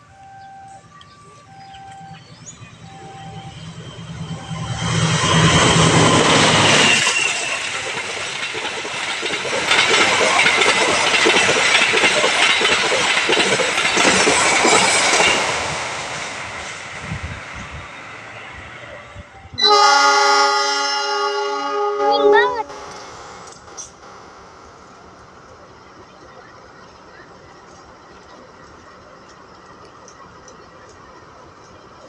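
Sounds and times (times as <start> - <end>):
train wheels clattering over rails: 2.1 - 18.4
steady pitched tone: 18.8 - 24.9.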